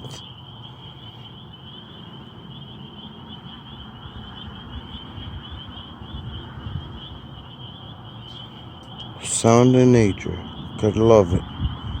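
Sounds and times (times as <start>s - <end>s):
crickets chirping: 0.0s - 12.0s.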